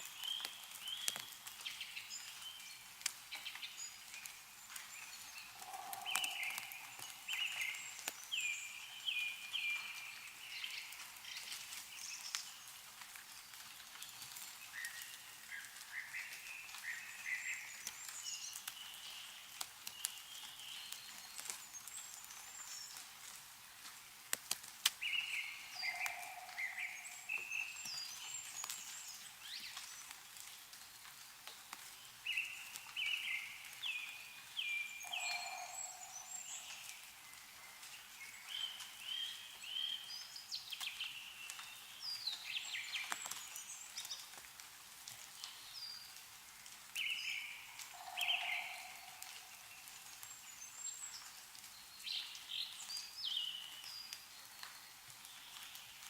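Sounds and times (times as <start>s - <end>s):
meltwater drops ticking: 0.0s - 8.4s, 17.7s - 25.1s
songbird singing: 0.0s - 12.9s, 14.0s - 23.2s, 25.0s - 30.3s, 31.1s - 44.3s, 47.0s - 56.0s.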